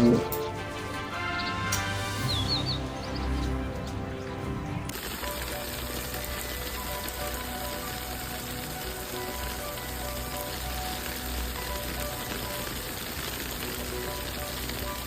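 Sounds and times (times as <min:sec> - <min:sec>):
background music: 0:00.0 - 0:15.0
dense steady hiss: 0:04.8 - 0:15.0.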